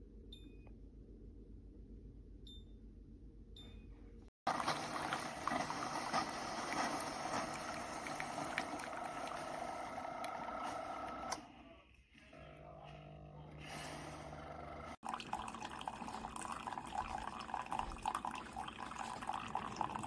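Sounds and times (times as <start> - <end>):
coffee maker hissing and sputtering: 4.5 - 11.4, 12.3 - 20.0.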